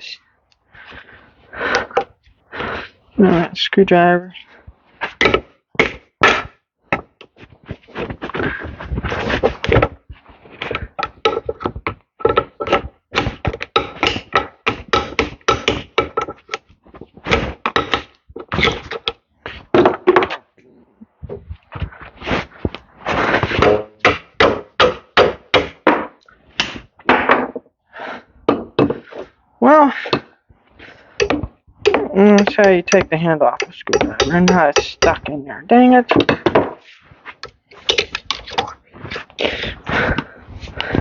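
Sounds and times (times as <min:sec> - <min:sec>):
hammer striking screwdriver: 0:31.2 - 0:35.2.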